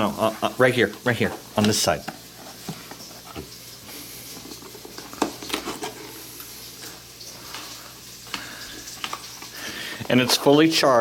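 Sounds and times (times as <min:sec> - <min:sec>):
plastic parts clicking and tapping: 0:08.3 - 0:10.4.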